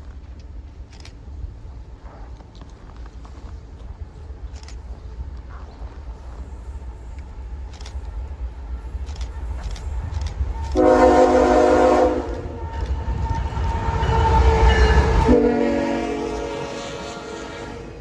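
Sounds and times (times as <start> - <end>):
passing train rumble: 0.0 - 18.0
locomotive horn blasts: 10.6 - 18.0.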